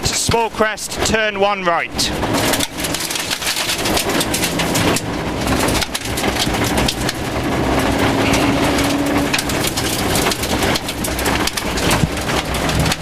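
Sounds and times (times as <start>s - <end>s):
car engine under load: 0.0s - 13.0s
gravel rattling against car underside: 0.0s - 13.0s.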